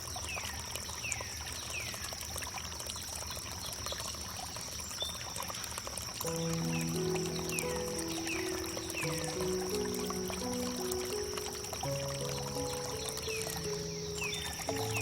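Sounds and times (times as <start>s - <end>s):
water trickling: 0.0s - 15.0s
soft held musical notes: 6.3s - 15.0s.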